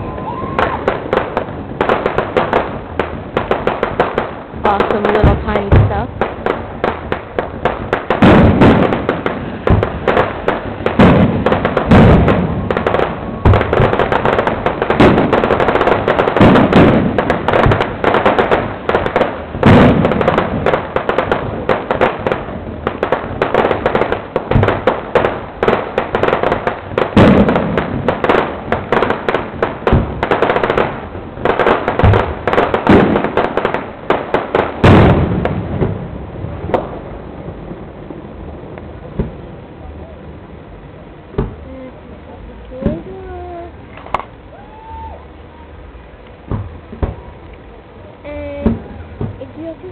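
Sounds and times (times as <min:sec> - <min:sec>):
fireworks crackling: 0:00.0 - 0:49.9
fireworks shell bursts booming: 0:00.6 - 0:37.0, 0:46.4 - 0:47.4.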